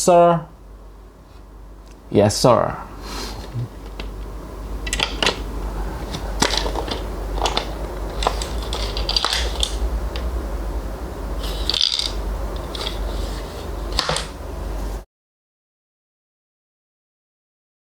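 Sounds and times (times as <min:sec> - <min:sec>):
steady low hum: 0:00.0 - 0:15.0
small hard objects clicking: 0:11.6 - 0:13.0.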